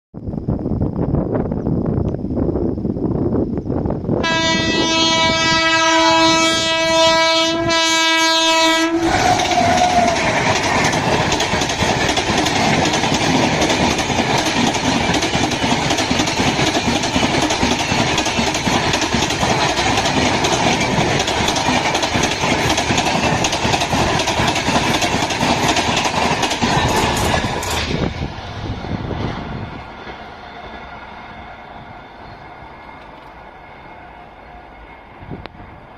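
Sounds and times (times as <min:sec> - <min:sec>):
locomotive horn blast: 0:04.2 - 0:10.2
wheels on rails: 0:09.0 - 0:35.9.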